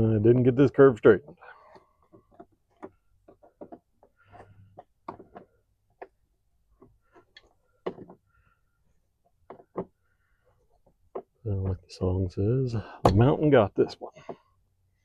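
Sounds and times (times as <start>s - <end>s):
parts and tools clicking: 1.4s - 8.3s.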